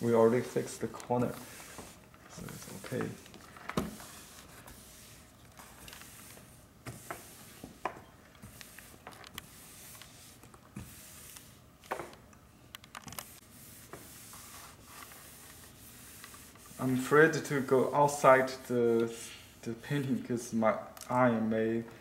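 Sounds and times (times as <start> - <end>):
iron rubbing on paper: 0.1 - 3.2, 3.9 - 7.8, 13.2 - 20.2.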